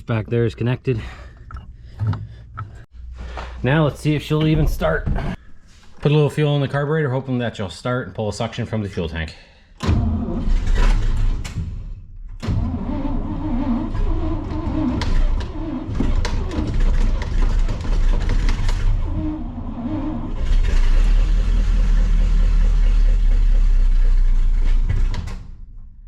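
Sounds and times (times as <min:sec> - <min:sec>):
petrol engine cranking and running: 0:12.5 - 0:25.5.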